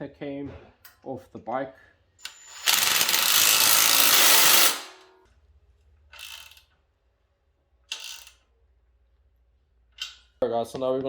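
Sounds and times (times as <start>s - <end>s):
power tool driving bolts: 2.2s - 5.1s, 6.2s - 6.6s.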